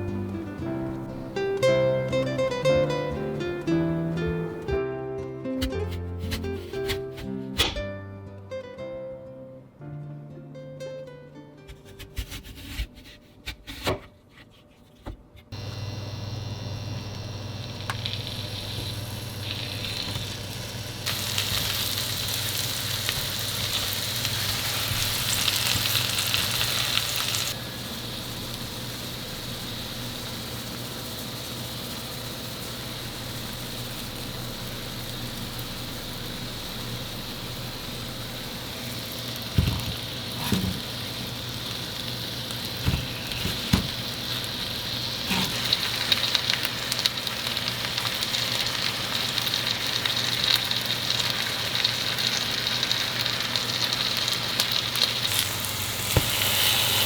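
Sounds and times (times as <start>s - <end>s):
food sizzling: 0.0s - 4.9s, 15.5s - 57.0s
low hum: 15.6s - 31.4s, 32.1s - 43.4s.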